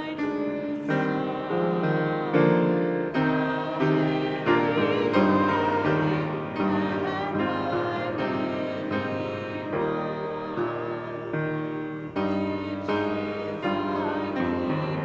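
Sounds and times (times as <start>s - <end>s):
piano playing slow chords: 0.0s - 15.0s.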